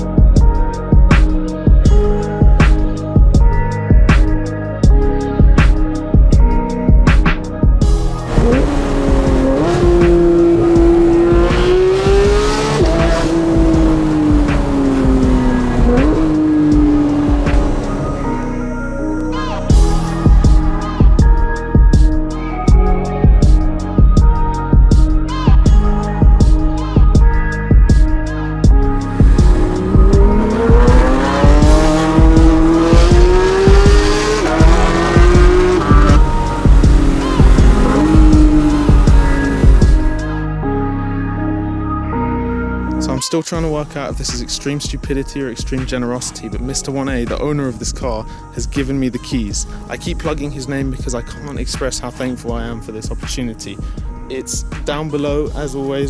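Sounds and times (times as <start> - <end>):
background music with a beat: 0.0 - 40.8, 42.9 - 56.0
car engine revving under load: 8.0 - 18.6, 28.9 - 40.2.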